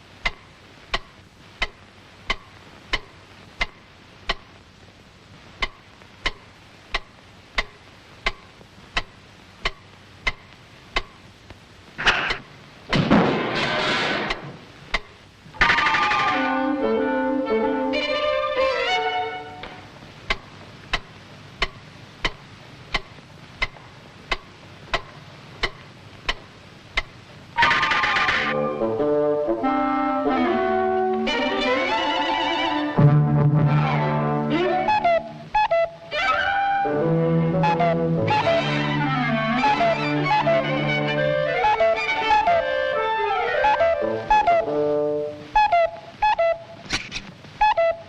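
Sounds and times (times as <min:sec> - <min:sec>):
clock ticking loudly: 0:00.2 - 0:04.5, 0:05.6 - 0:11.2, 0:20.3 - 0:27.2.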